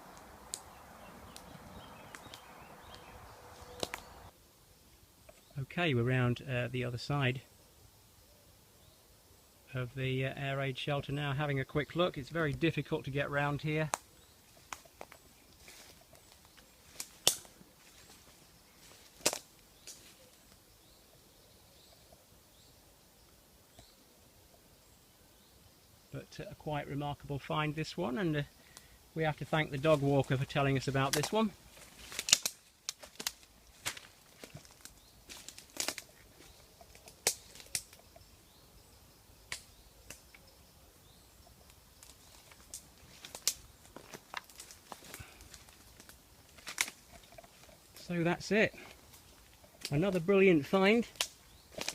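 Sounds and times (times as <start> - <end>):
twigs snapping underfoot: 0.1 - 4.3, 13.9 - 20.6, 31.1 - 38.1, 39.5 - 40.4, 41.6 - 48.0, 48.9 - 50.0, 51.1 - 51.9.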